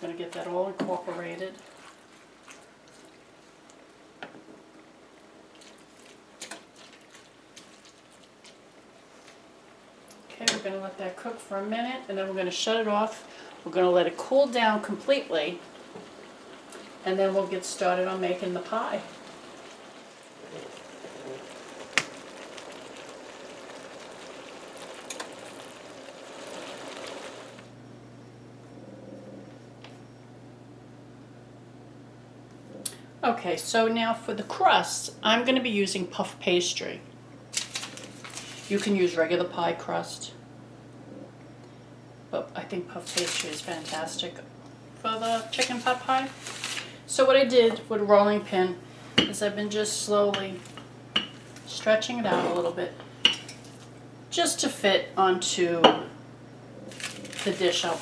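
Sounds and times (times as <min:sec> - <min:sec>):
vegetables sizzling in a frying pan: 0:10.4 - 0:27.8, 0:42.8 - 0:44.4, 0:45.0 - 0:56.2, 0:56.9 - 0:58.0
spoon knocking pan: 0:51.2 - 0:51.4.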